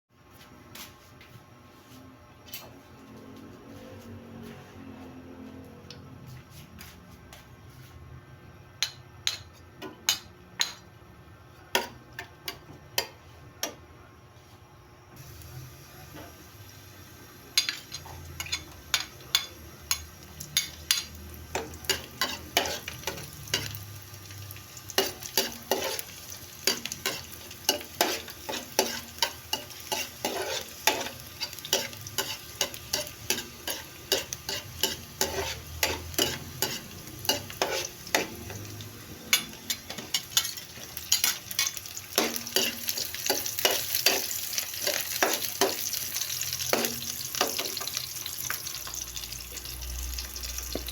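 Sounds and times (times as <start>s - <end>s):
food sizzling in hot oil: 15.2s - 50.9s.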